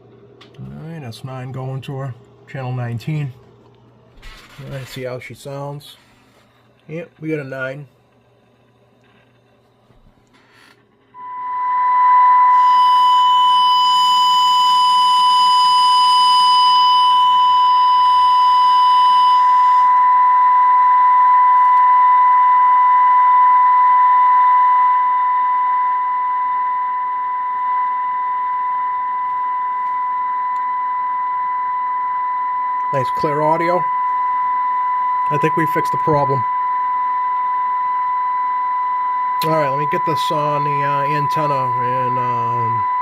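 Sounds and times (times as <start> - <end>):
steady test tone through speaker: 9.0 - 43.0.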